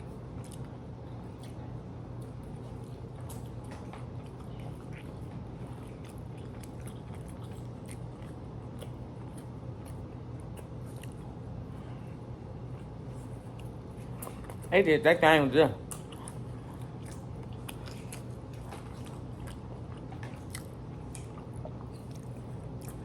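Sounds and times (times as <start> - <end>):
people chewing food: 0.0 - 23.0
steady low hum: 0.0 - 23.0
food crunches: 0.2 - 11.4, 15.8 - 23.0.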